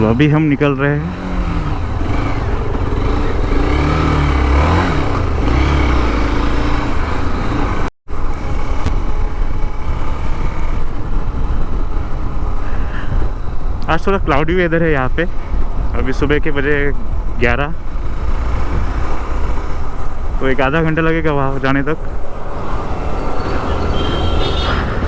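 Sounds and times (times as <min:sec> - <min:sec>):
motorcycle engine running: 0:00.0 - 0:13.8
wind and road noise: 0:00.0 - 0:25.0.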